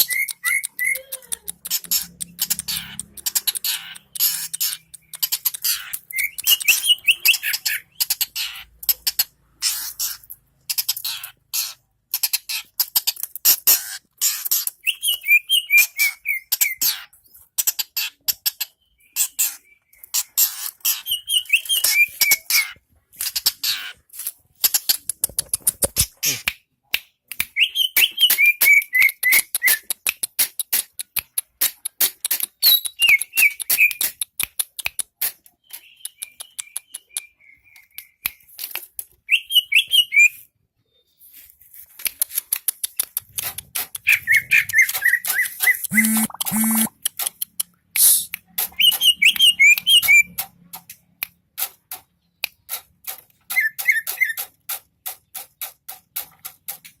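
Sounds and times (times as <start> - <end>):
bird harsh ticking notes: 44.2 - 47.0.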